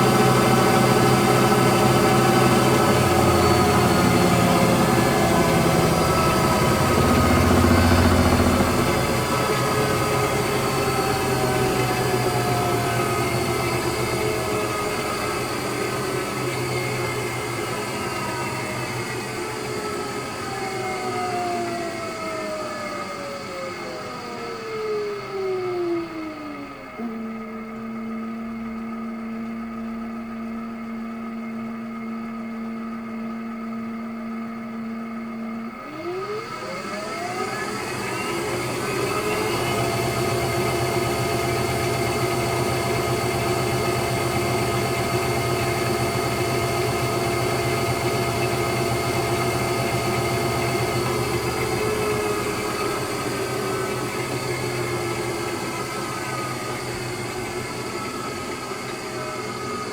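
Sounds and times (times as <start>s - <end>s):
washing machine drum spinning: 0.0s - 22.1s, 36.8s - 59.8s
washing machine motor whine: 0.0s - 59.9s.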